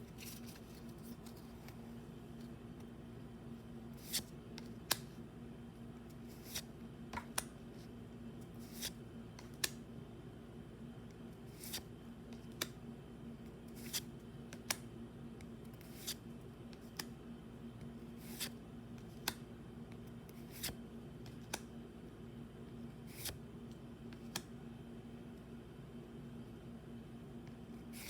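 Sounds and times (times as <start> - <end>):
trading cards flipped: 0.1 - 1.8, 4.0 - 5.1, 8.6 - 9.8, 13.8 - 14.0, 18.2 - 19.4, 23.1 - 23.4.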